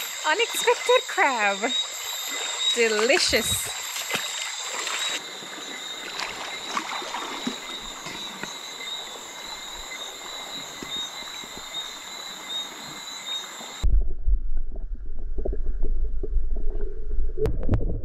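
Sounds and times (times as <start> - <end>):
river water splashing: 0.0 - 13.8.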